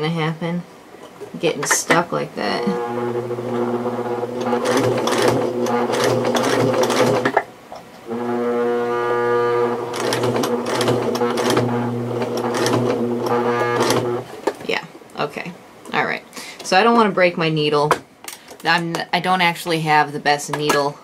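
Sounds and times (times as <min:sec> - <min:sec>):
electric sewing machine stitching: 0:01.6 - 0:07.4, 0:08.0 - 0:14.4.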